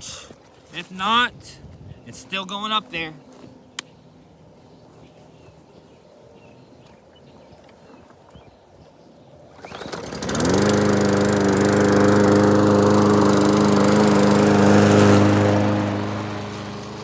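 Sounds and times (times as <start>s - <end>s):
lawn mower engine starting: 9.5s - 17.0s.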